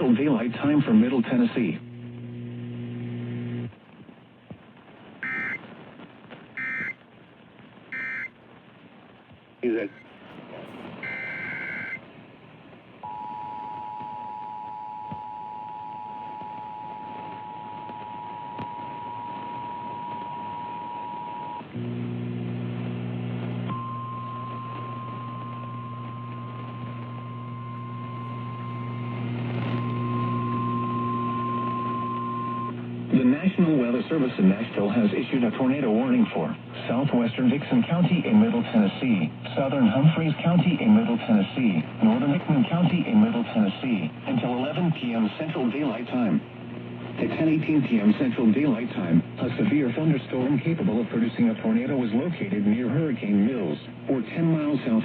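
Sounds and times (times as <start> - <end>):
low steady hum: 1.8 - 55.0
digital data bursts: 5.2 - 5.6, 6.6 - 7.0, 7.9 - 8.3, 10.9 - 12.0
thin steady alarm tone: 5.2 - 5.6, 6.6 - 7.0, 7.9 - 8.3, 11.0 - 12.0.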